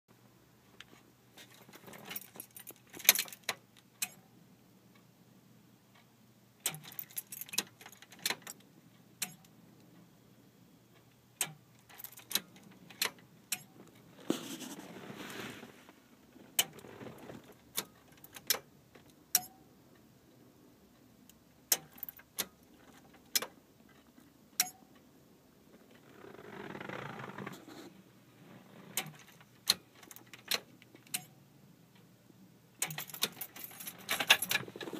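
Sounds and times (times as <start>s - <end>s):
keys jangling: 1.4s - 3.5s, 6.7s - 8.2s, 32.8s - 34.9s.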